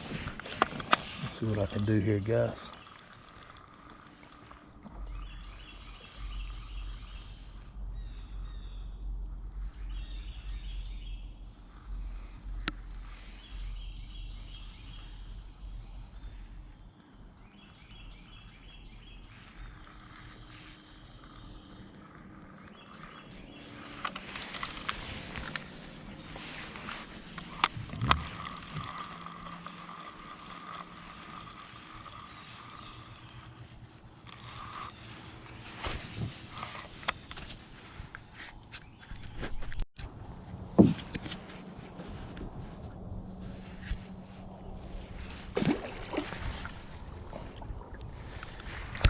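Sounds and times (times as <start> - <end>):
handling clicks and rustling: 0.0 - 4.9, 21.9 - 39.9
insect chirps: 0.0 - 49.0
insects droning: 0.0 - 49.0.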